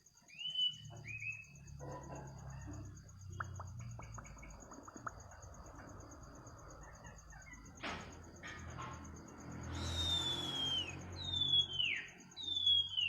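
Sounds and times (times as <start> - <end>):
high insect trill: 0.0 - 13.0
faint chirps and clicks: 0.3 - 13.0
bird falling whistle: 9.7 - 13.0.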